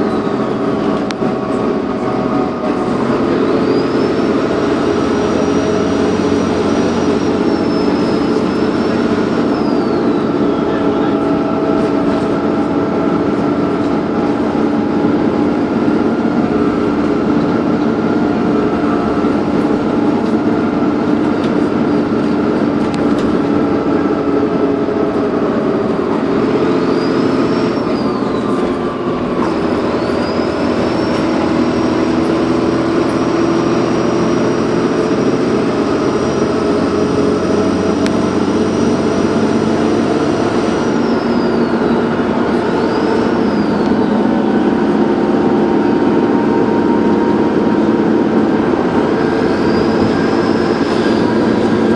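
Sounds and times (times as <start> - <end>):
bus engine drone: 0.0 - 51.9
turbo whistle: 3.6 - 10.8, 35.7 - 44.4.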